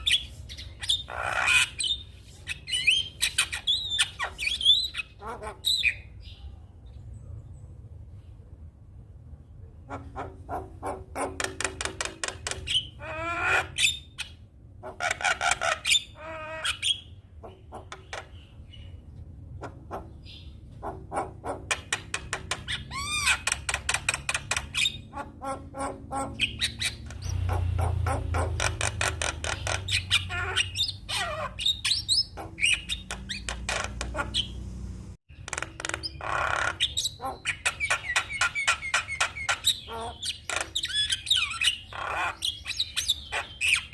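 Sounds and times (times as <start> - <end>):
bird singing: 0.0 - 7.7, 22.5 - 34.7, 35.3 - 43.9.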